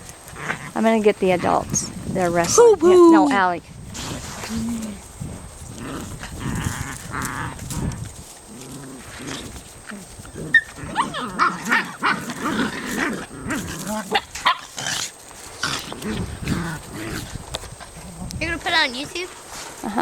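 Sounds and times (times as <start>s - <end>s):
puppies growling and grunting: 0.3s - 1.9s, 3.9s - 18.4s
puppies yipping and whining: 10.3s - 12.4s.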